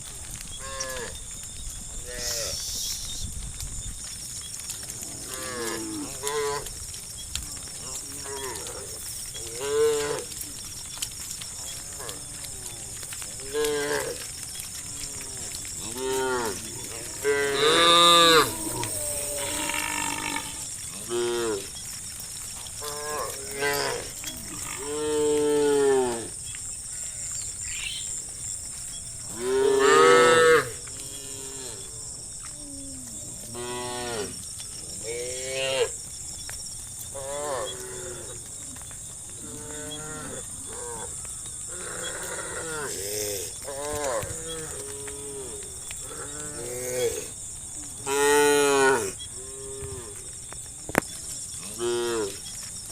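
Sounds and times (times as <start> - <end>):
steady high hiss: 26.0 - 32.2.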